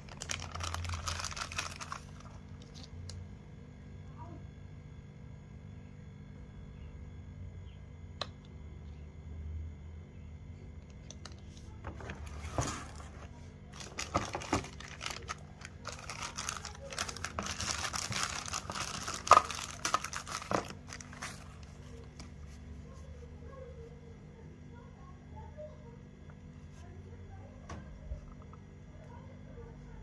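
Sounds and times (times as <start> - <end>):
packaging crinkling: 0.0 - 3.2, 12.0 - 22.4.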